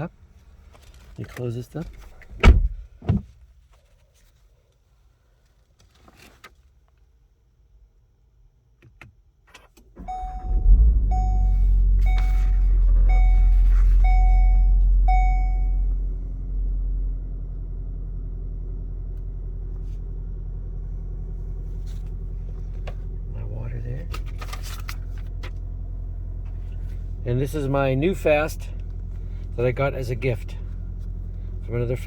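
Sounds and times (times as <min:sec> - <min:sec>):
car engine starting and idling: 0:09.5 - 0:32.0
car warning chime beeping: 0:10.0 - 0:15.9.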